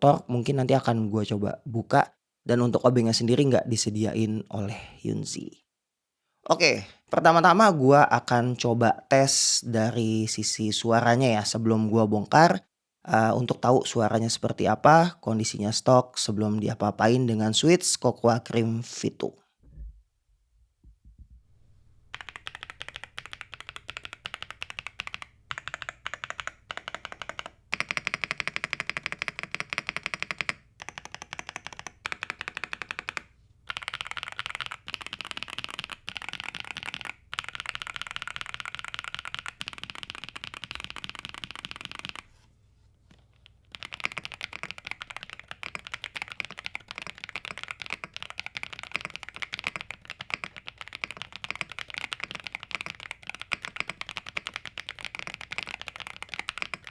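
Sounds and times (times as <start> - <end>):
fast typing on mechanical keyboard: 22.1 - 42.3, 43.5 - 56.9.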